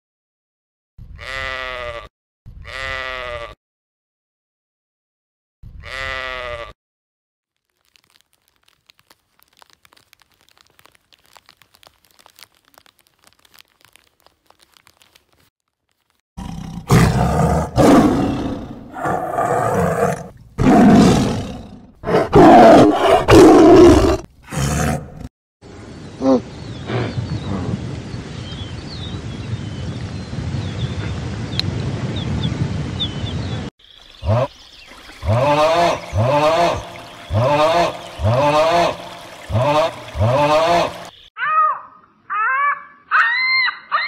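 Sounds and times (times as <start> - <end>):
sheep bleating: 5.8 - 6.7
large animal roaring: 16.4 - 25.3.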